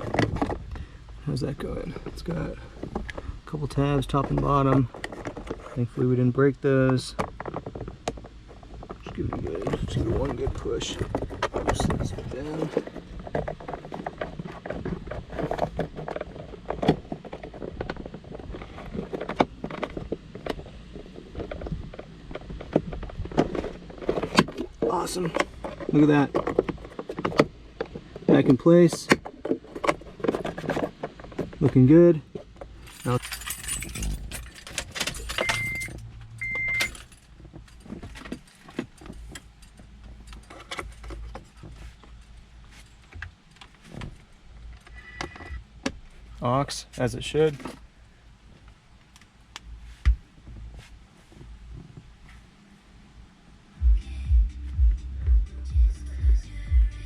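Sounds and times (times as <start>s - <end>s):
steady low hum: 0.0s - 57.0s
keys jangling: 32.8s - 37.8s.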